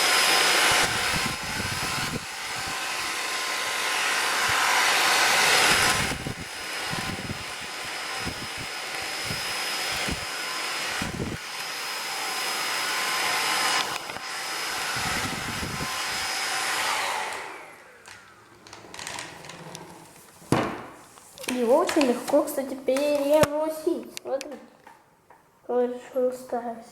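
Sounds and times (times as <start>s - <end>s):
vacuum cleaner whining: 0.0s - 20.3s.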